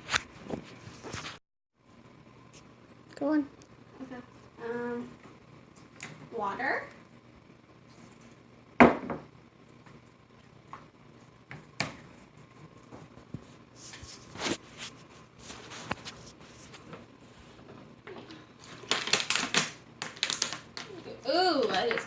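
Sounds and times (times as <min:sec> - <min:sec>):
containers and bowl knocking: 0:08.8 - 0:09.3.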